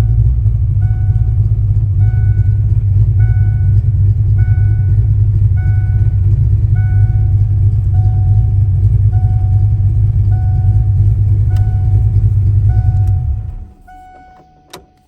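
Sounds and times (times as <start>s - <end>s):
car engine low rumble: 0.0s - 15.0s
short beep: 4.4s - 15.0s.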